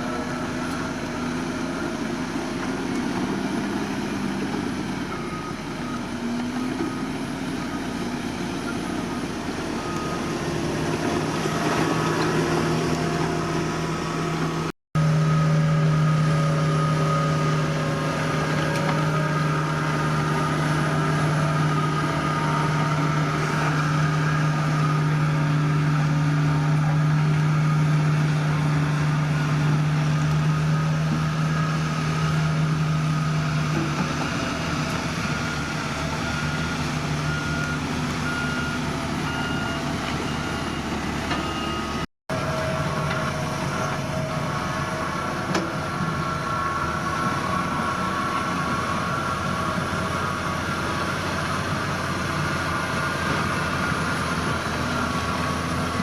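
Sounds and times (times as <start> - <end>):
heavy machinery diesel engines: 0.0 - 56.0
reversing alarm beeping: 5.0 - 33.8, 34.8 - 45.2.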